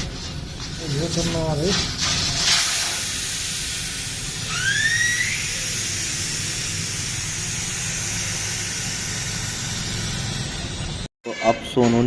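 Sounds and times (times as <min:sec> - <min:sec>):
air hissing out of tyre: 0:01.9 - 0:11.1
brief rising squeal: 0:04.4 - 0:05.8.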